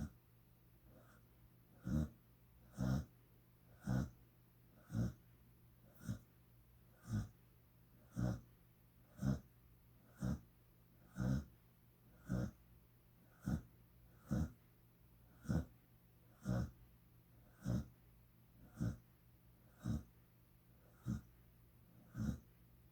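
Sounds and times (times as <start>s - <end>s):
dog snoring: 0.9s - 6.3s, 6.9s - 12.6s, 13.2s - 14.6s, 15.2s - 16.8s, 17.4s - 18.0s, 18.6s - 20.2s, 20.8s - 22.6s.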